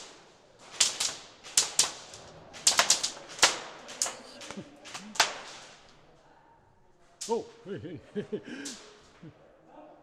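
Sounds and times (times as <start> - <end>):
airsoft gun shots: 0.0 - 4.2.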